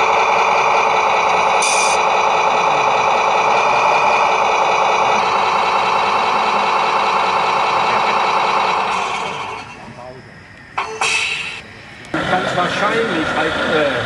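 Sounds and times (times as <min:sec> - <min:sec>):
model truck motor droning: 0:00.0 - 0:10.0, 0:12.0 - 0:14.0.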